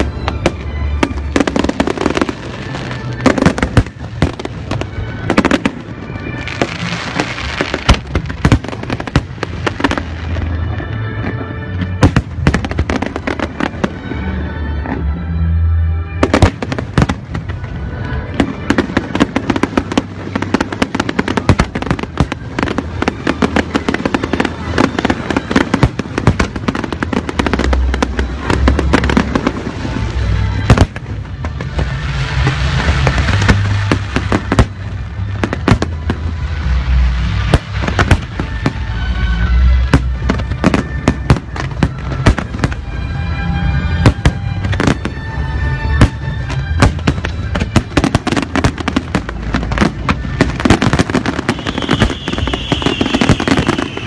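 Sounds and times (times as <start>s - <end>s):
deep fireworks booms: 0.0s - 14.2s, 16.2s - 43.0s, 43.7s - 54.0s
fireworks bangs and crackles: 0.0s - 15.4s, 16.0s - 54.0s
music: 0.0s - 54.0s.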